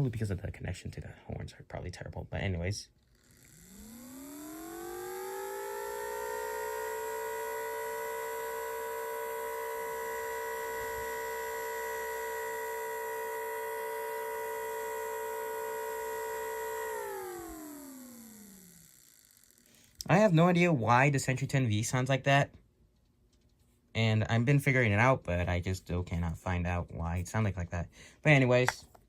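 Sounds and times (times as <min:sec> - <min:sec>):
siren winding up and down: 0:03.0 - 0:20.0.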